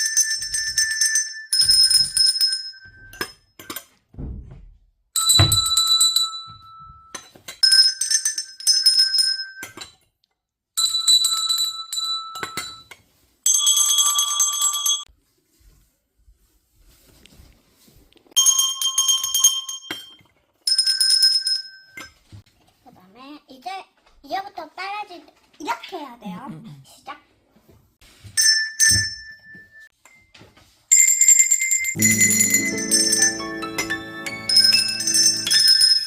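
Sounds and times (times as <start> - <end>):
soft thumps: 4.1 - 4.8
tuned bells melody: 32.0 - 36.0.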